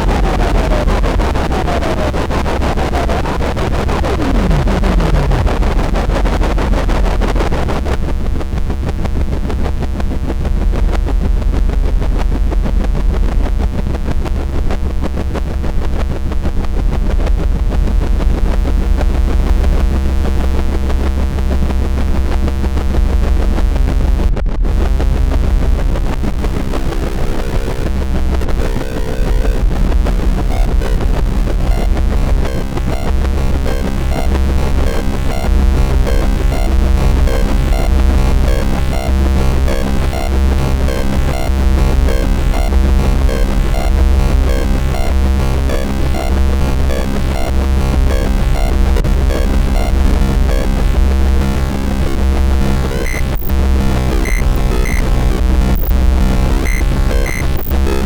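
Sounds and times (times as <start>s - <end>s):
electronic noise music: 0.0s - 7.9s, 24.0s - 58.0s
deep bass: 0.0s - 58.0s.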